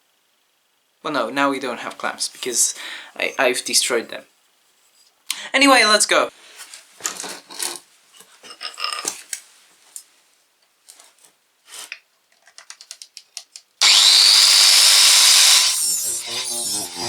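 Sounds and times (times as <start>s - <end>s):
angle grinder grinding steel rod: 13.8s - 17.0s.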